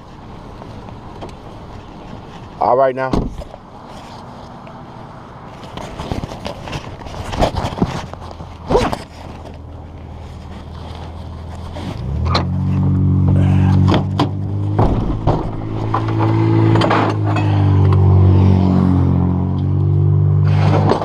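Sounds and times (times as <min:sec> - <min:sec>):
vehicle engine running: 0:09.4 - 0:21.0
sharp knocks and clanks: 0:13.8 - 0:18.0.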